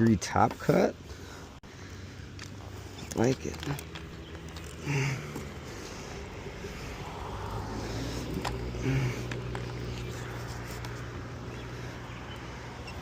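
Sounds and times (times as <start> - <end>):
chainsaw idling: 3.2 - 6.3.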